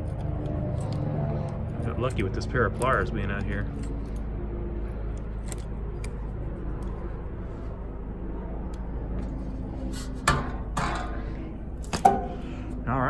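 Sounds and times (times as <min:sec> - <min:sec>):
sharp metal clank: 0:12.0 - 0:12.5.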